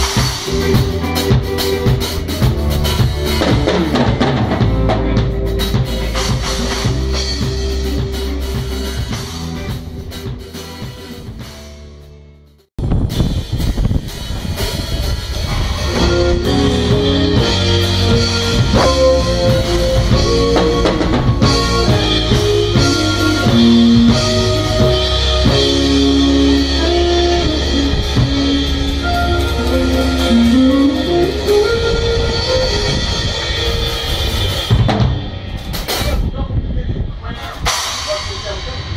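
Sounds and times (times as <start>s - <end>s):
keyboards playing: 0.0s - 12.7s, 13.5s - 38.9s
guitar: 0.0s - 37.7s
drum kit: 0.0s - 38.9s
sliding note: 15.5s - 34.9s.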